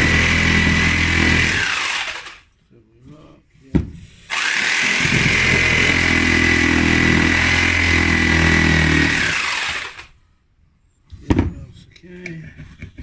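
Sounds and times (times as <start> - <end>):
power tool motor whining: 0.0 - 2.4, 4.3 - 10.1.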